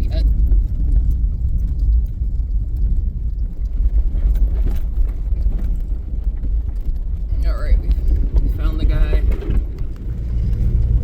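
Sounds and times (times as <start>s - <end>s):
vehicle engine and tyres rumbling: 0.0s - 11.0s.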